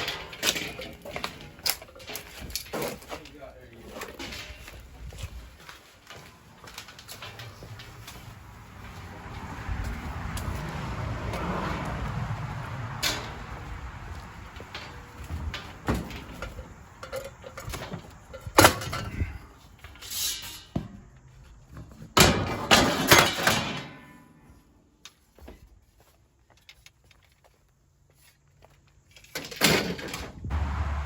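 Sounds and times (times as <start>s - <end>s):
scrap clattering and clunking: 0.0s - 21.0s.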